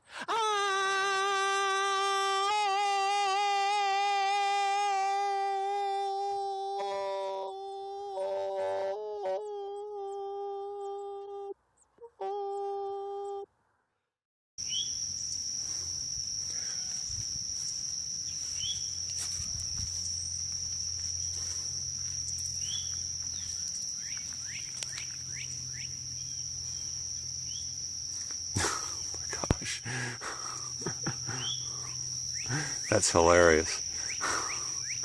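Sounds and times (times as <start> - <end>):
high insect drone: 0.0 - 11.6, 14.6 - 35.0
bird chirps: 14.6 - 15.4, 16.6 - 20.4, 21.0 - 27.8, 31.2 - 33.0, 34.0 - 35.0
steady pitched hum: 14.6 - 35.0.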